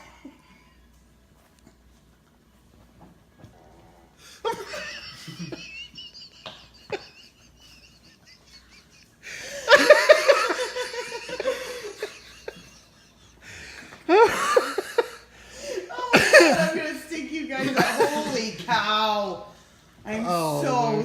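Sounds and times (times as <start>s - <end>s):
loud laughing: 4.4s - 16.8s
stifled giggling: 4.4s - 16.8s.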